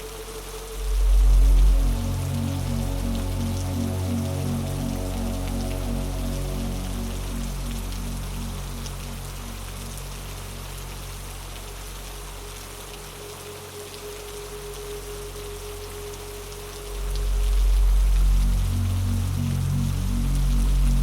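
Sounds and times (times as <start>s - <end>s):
dark synth drone: 0.0s - 21.0s
rain hissing: 0.0s - 21.0s
deep bass swell: 0.3s - 10.4s, 16.9s - 21.0s.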